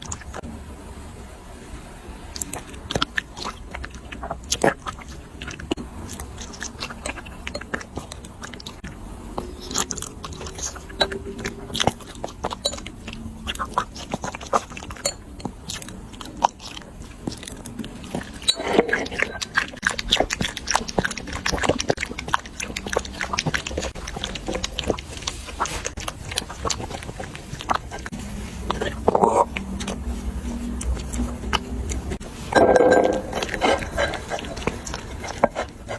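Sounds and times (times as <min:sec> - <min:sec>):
dogs chewing: 0:00.0 - 0:00.5, 0:02.3 - 0:35.9.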